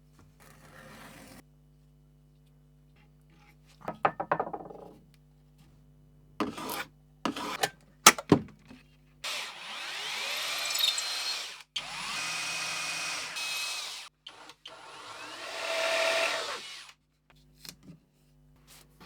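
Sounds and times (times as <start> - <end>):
hand tool scraping wood: 6.4 - 7.7
power tool running: 9.3 - 16.9.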